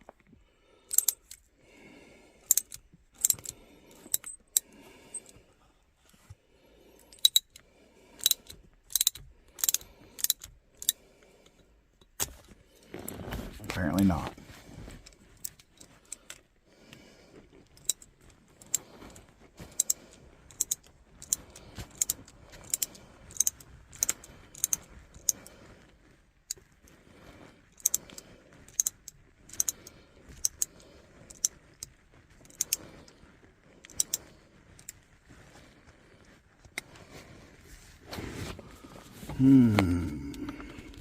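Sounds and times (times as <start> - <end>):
hand ratchet clicking: 0.9 - 1.4, 2.4 - 5.4, 7.0 - 7.6, 8.2 - 11.0, 19.7 - 25.4, 27.8 - 32.8, 33.9 - 34.2.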